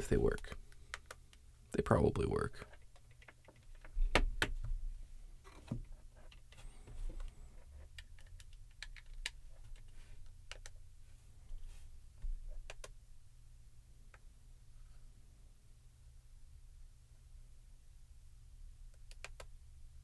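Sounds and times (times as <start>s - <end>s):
low steady hum: 0.0s - 0.9s.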